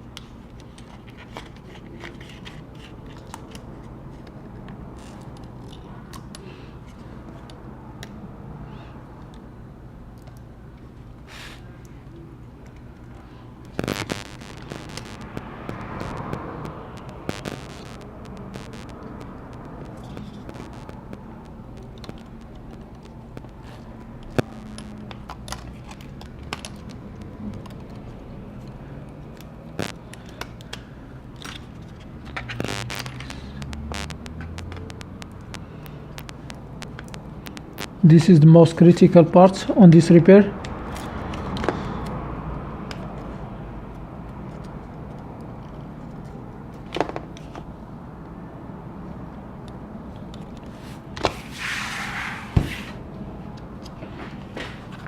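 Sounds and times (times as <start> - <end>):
steady low hum: 5.8 - 39.4.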